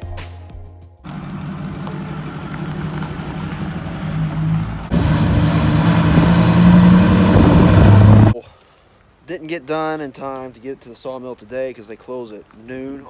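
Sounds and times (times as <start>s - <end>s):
diesel engine running: 1.1s - 8.4s.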